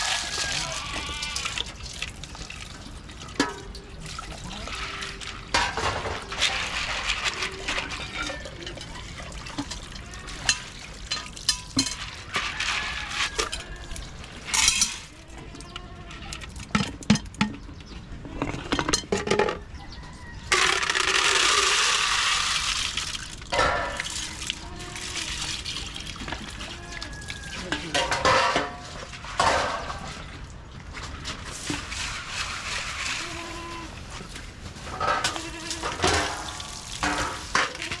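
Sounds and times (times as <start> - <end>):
water pouring: 0.0 - 15.1, 20.5 - 38.0
pots and dishes clinking: 3.3 - 3.8, 4.5 - 13.8, 14.4 - 15.1, 16.6 - 19.6, 23.5 - 24.3, 26.3 - 30.2, 34.8 - 38.0.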